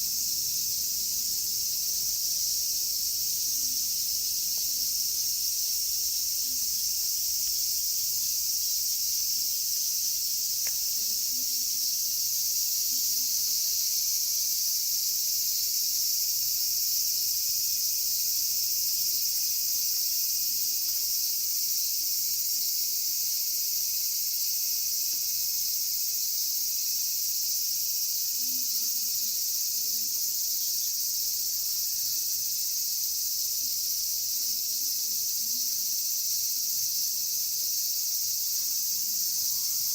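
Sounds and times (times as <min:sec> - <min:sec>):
cicadas droning: 0:00.0 - 0:39.9.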